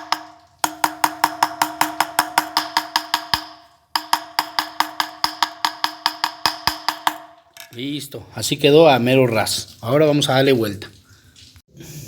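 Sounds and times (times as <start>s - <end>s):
hammer knocking on metal bearing: 0.0s - 7.3s.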